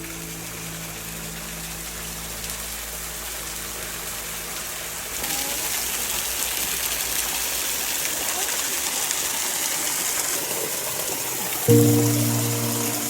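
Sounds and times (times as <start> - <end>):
waterfall rushing: 11.7 - 13.0.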